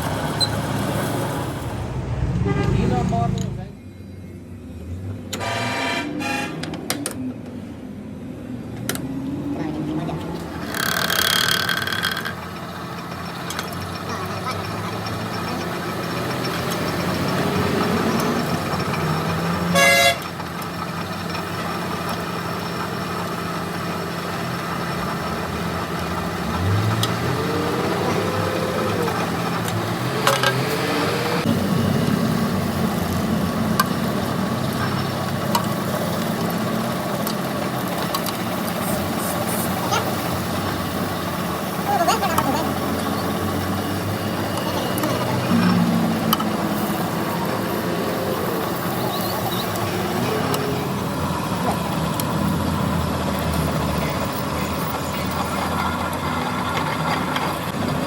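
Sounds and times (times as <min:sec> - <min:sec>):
traffic engines running: 0:00.0 - 0:58.0
car horn toots: 0:02.4 - 0:03.1, 0:05.3 - 0:06.8, 0:19.6 - 0:20.4.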